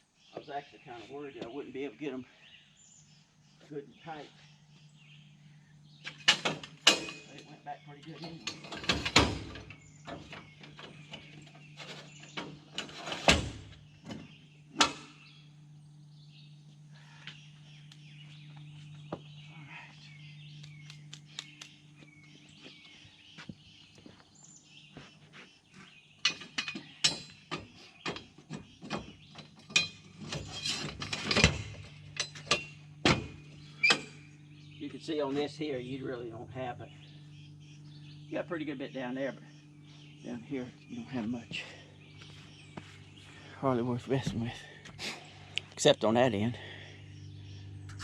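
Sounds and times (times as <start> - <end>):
bird chirping: 0.0 - 48.0
low steady hum: 0.0 - 48.0
sharp knocks and clinks: 6.0 - 13.4, 26.2 - 34.2.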